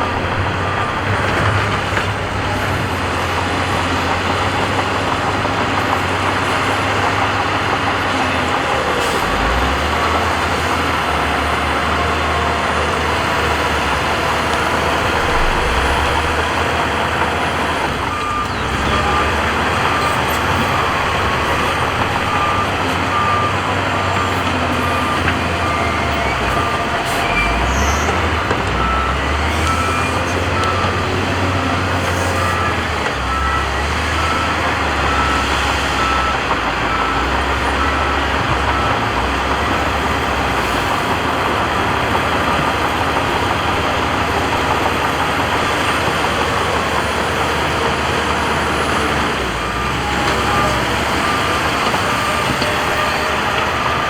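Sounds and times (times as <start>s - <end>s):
diesel machine engines: 0.0s - 54.0s
reversing alarm beeps: 8.9s - 41.0s.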